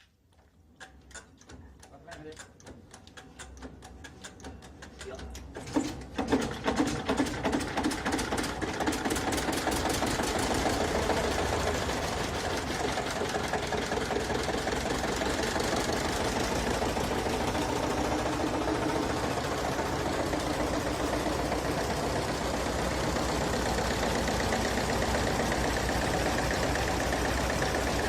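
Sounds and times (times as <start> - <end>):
hand crank ticking: 0.8 - 5.6
mill engine running: 3.8 - 28.0.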